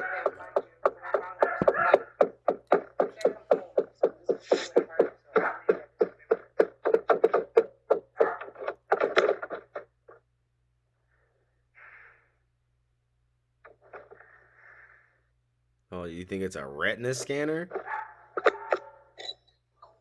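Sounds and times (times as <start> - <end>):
rapid knocking on a door: 0.0 - 9.1.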